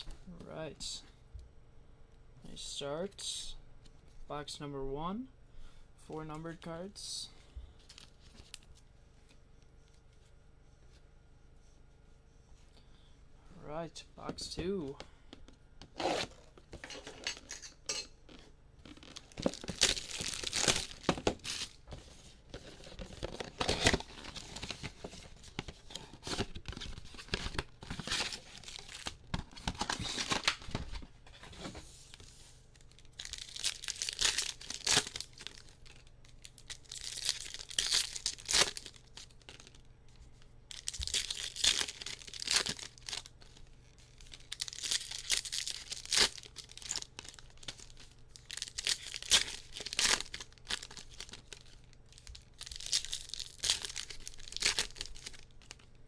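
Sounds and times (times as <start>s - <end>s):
wrapping tearing and crinkling: 18.8s - 31.0s, 32.0s - 56.0s.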